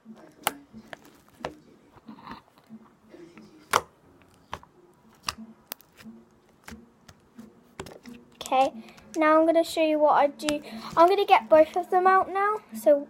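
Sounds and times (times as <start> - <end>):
slime squelching: 3.4 - 9.4.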